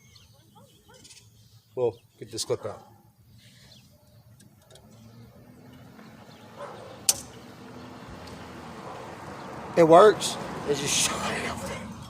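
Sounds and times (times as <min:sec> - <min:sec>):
sharp metallic click: 0:07.0 - 0:07.4.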